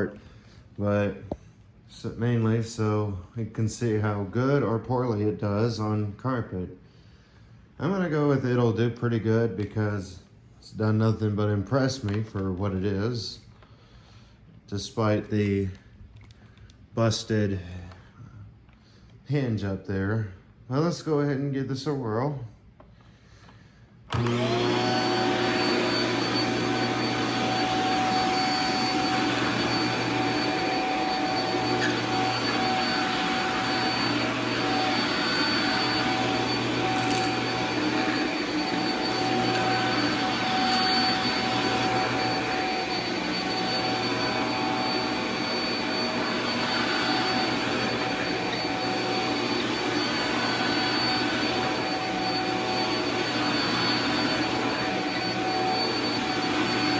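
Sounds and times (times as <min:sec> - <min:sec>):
vacuum cleaner running: 0:24.1 - 0:56.9.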